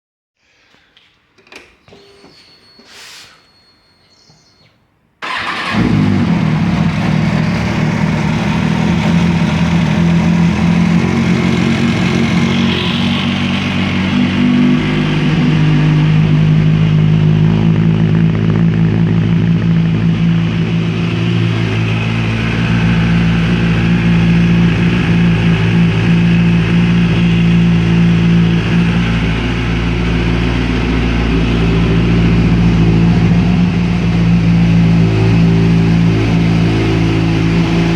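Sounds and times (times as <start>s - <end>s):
motorcycle engine starting and idling: 5.2s - 37.9s.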